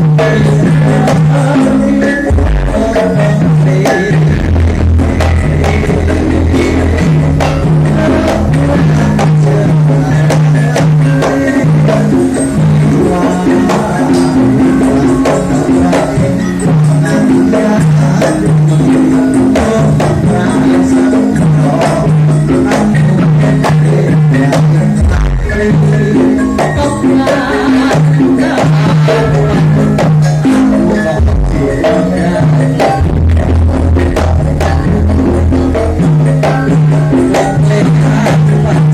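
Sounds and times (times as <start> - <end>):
gamelan music playing: 0.0 - 38.9.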